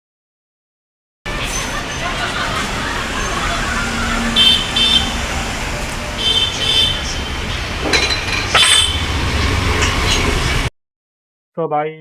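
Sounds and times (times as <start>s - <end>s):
road traffic rumble: 1.3s - 10.7s
sharp clinks: 7.9s - 9.0s.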